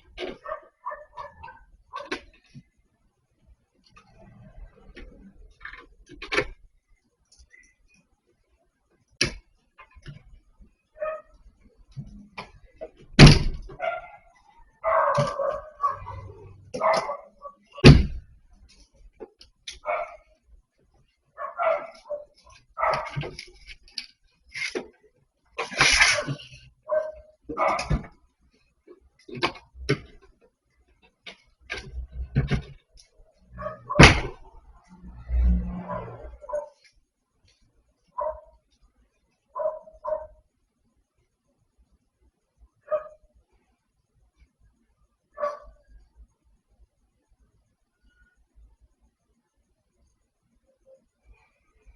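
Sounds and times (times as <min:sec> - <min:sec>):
dog barking: 0:00.4 - 0:02.2, 0:11.0 - 0:11.3, 0:13.8 - 0:17.8, 0:19.8 - 0:20.4, 0:21.4 - 0:23.3, 0:26.1 - 0:28.0, 0:33.5 - 0:34.1, 0:35.8 - 0:36.8, 0:38.2 - 0:38.6, 0:39.5 - 0:40.4, 0:42.9 - 0:43.2, 0:45.3 - 0:45.9.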